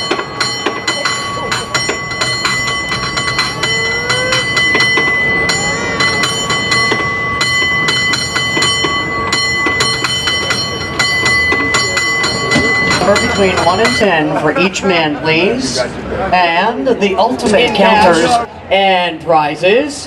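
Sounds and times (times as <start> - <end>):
cable car bell ringing: 0.0 - 15.0.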